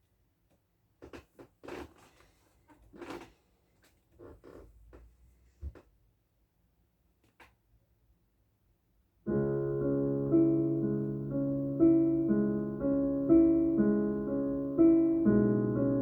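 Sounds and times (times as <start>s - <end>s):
electric piano keyboard music: 9.3s - 16.0s.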